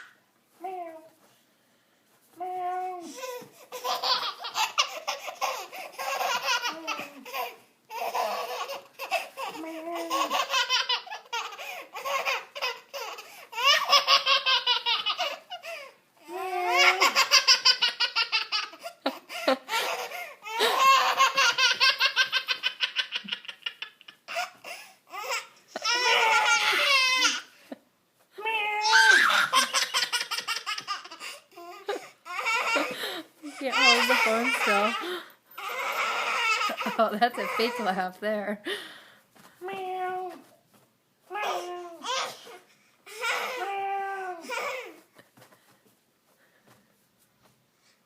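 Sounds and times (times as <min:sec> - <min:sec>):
baby laughing: 0:03.1 - 0:15.9, 0:16.5 - 0:27.6, 0:28.9 - 0:37.8, 0:41.4 - 0:43.7.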